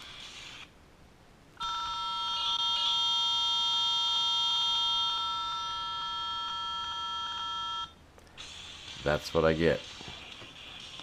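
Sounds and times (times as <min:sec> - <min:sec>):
loud high-pitched headset tone: 0:01.6 - 0:08.0.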